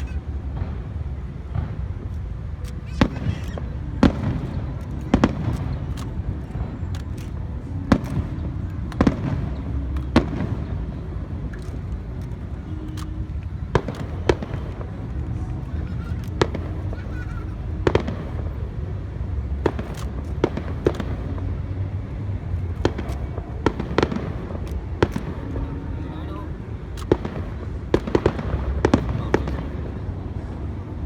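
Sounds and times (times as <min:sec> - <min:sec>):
fireworks bursting: 0:00.0 - 0:31.0
low background rumble: 0:00.0 - 0:31.0.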